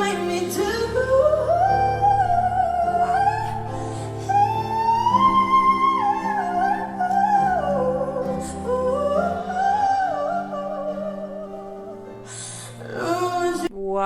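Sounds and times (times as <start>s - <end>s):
held accompaniment chords: 0.0s - 13.7s
woman singing wordless vocal run: 0.0s - 14.0s.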